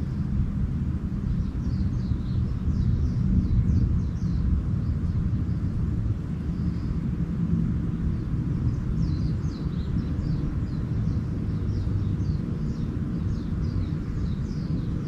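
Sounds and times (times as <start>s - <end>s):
small birds chirping: 0.0s - 7.3s, 7.9s - 15.0s
steady low rumble: 0.0s - 15.0s.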